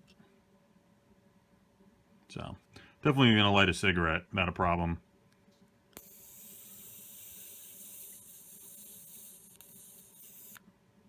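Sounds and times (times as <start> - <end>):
arc lighter hissing buzz: 6.0 - 10.6.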